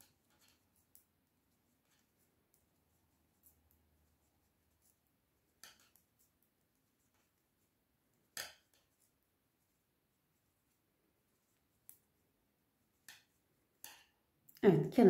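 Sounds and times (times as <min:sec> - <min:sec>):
knitting needles clicking: 0:05.6 - 0:06.2.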